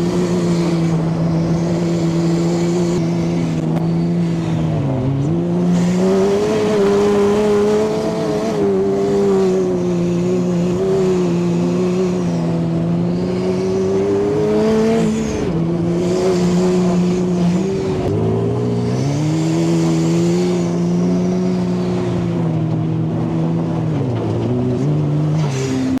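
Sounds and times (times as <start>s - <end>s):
turbocharged engine running: 0.0s - 26.0s.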